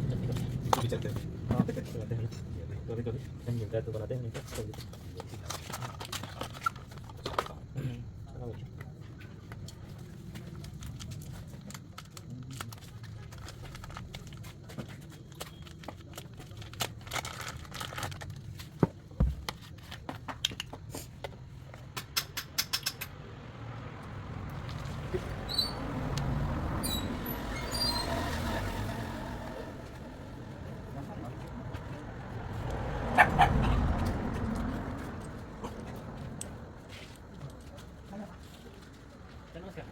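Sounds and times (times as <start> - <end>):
sharp clicks and knocks: 21.8 - 23.2
low rumble: 24.0 - 36.2.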